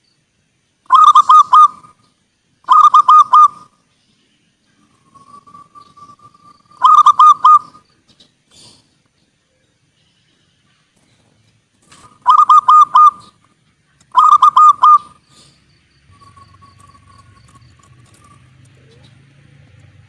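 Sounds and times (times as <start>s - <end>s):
dove cooing: 0.9s - 2.0s, 2.7s - 3.7s, 5.0s - 7.8s, 11.9s - 13.4s, 14.1s - 15.2s, 16.1s - 19.3s.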